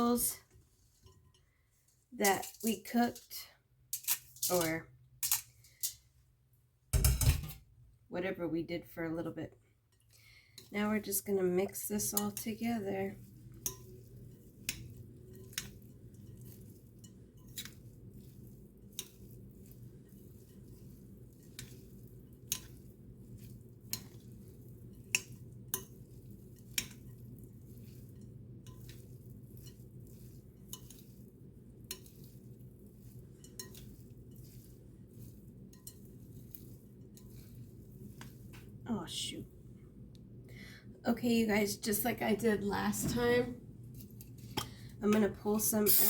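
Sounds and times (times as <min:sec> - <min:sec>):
spoon stirring and clinking dish: 0:00.9 - 0:01.6, 0:02.2 - 0:06.0, 0:09.9 - 0:38.8.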